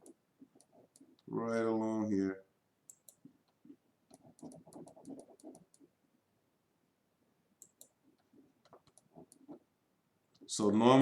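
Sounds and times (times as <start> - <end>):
mouse and keyboard clicks: 2.9 - 5.9, 7.6 - 9.6.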